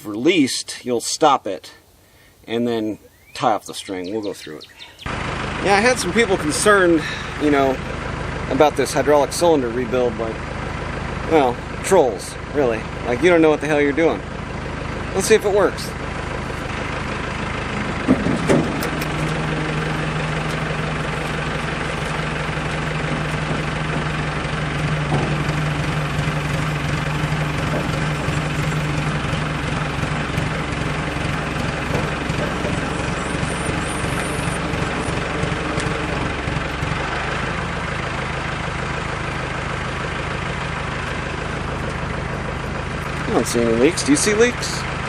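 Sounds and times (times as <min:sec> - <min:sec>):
tractor engine running: 0:01.8 - 0:45.0
low steady hydraulic tone: 0:18.1 - 0:36.6.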